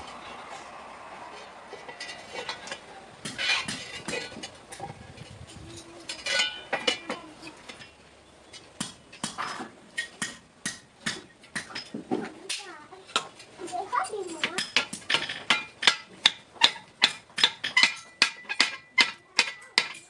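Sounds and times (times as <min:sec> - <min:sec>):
metal tools clinking and clattering: 0:01.4 - 0:08.0.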